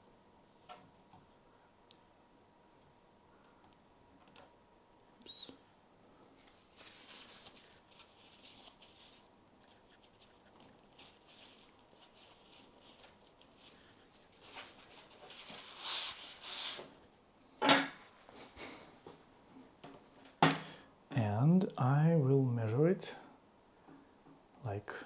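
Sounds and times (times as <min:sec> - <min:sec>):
rustling: 0:06.3 - 0:16.9
rubbing and handling tubing: 0:06.4 - 0:17.0.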